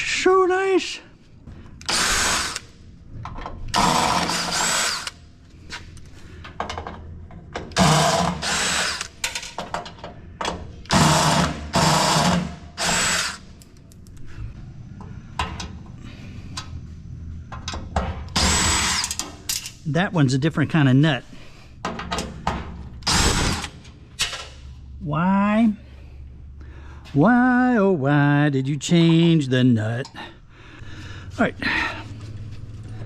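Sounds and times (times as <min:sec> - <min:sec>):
power drill whirring: 0:01.8 - 0:02.7, 0:03.8 - 0:05.2, 0:07.8 - 0:09.2, 0:10.9 - 0:13.5, 0:18.4 - 0:19.2, 0:23.0 - 0:23.7.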